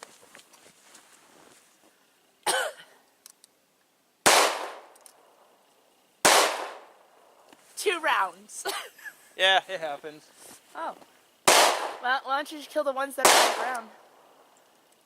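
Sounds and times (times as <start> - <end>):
pistol shots with echo: 4.2 - 4.9, 6.2 - 6.9, 11.5 - 12.0, 13.2 - 13.8.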